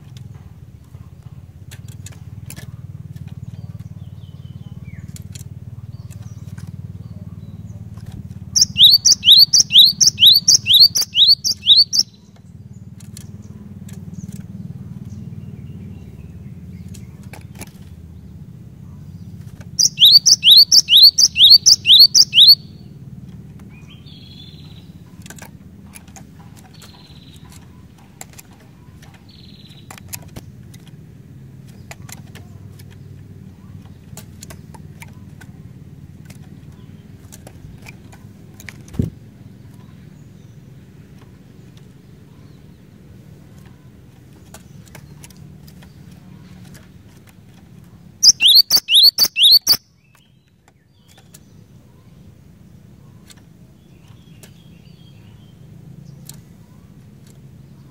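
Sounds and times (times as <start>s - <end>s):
bird chirping: 2.7s - 17.2s, 19.0s - 25.3s, 25.9s - 30.8s, 47.9s - 57.9s
scattered clicks: 8.0s - 15.2s
rapid sharp high bird notes: 8.6s - 12.1s, 19.8s - 22.7s, 48.2s - 49.9s.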